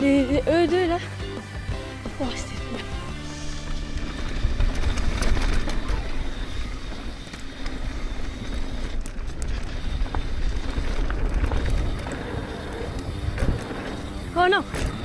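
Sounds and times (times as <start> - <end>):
bike tyres on dirt: 2.2 - 15.0
bike clicking and rattling: 2.8 - 15.0
wind buffeting microphone: 4.2 - 15.0.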